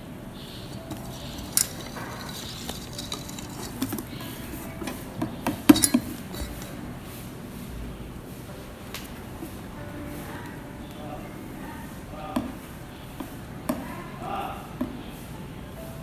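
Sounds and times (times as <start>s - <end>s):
utensil stirring batter: 0.4s - 7.2s
utensil clinking against bowl: 0.5s - 7.0s.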